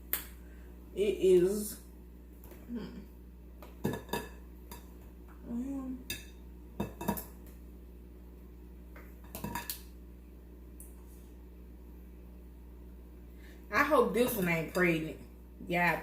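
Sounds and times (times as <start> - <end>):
person humming: 2.6 - 3.1, 5.4 - 6.1.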